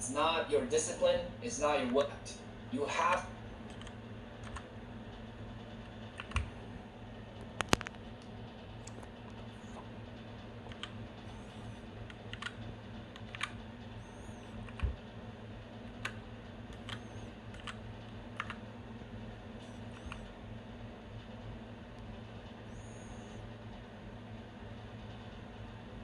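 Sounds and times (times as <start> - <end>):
steady low hum: 0.0 - 26.0
mechanical keyboard key presses: 6.2 - 6.5, 12.1 - 12.6, 13.2 - 13.6, 16.8 - 17.8.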